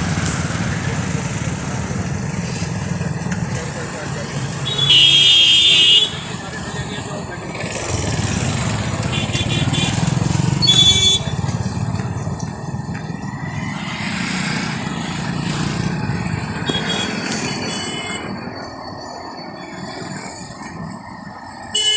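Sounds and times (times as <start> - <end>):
road traffic rumble: 0.0 - 21.9
vehicle horns honking: 4.5 - 7.2, 8.1 - 11.8, 16.6 - 18.4.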